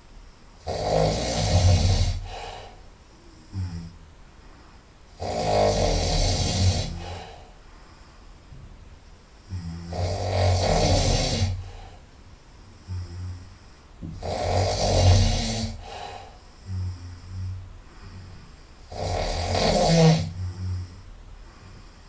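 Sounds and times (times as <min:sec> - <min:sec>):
quiet breath sounds: 0:00.0 - 0:22.0
loud nasal snoring: 0:00.6 - 0:04.0, 0:05.1 - 0:07.6, 0:09.5 - 0:12.0, 0:12.8 - 0:22.0.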